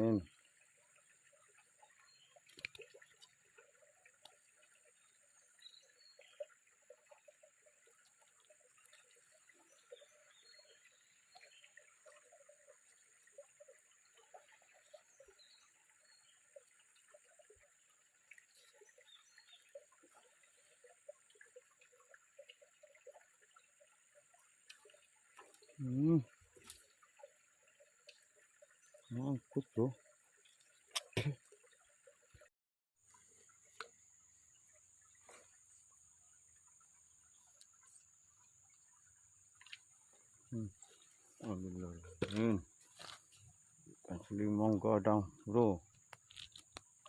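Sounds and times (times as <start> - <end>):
small splashes and drips: 0.0 - 47.0
water trickling: 0.0 - 47.0.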